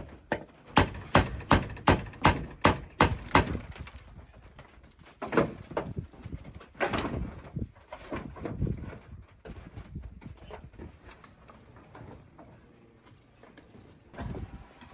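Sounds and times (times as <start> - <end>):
hammer striking nail: 0.8 - 3.6.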